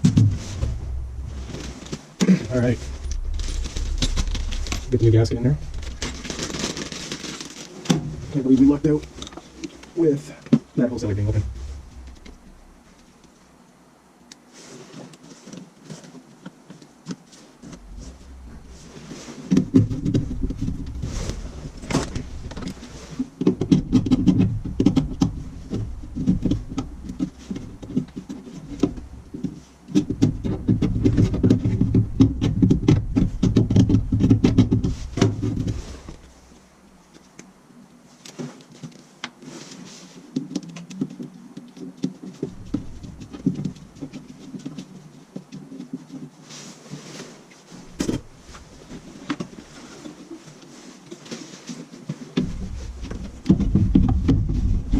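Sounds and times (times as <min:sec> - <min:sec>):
heavy low rumble: 0:00.0 - 0:07.0, 0:08.0 - 0:10.2, 0:10.8 - 0:13.2, 0:17.7 - 0:23.0, 0:24.4 - 0:27.9, 0:52.6 - 0:54.9
tools rubbing and knocking on metal: 0:17.4 - 0:36.6.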